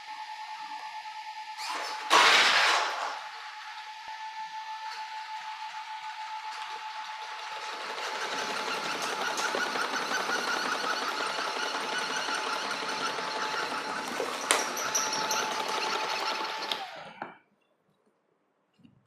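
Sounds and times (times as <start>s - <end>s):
electric motor whirring and buzzing: 3.4s - 17.2s.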